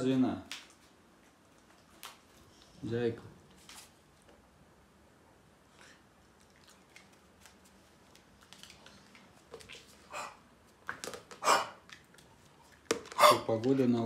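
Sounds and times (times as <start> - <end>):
dog noisy breaths: 11.4 - 11.8.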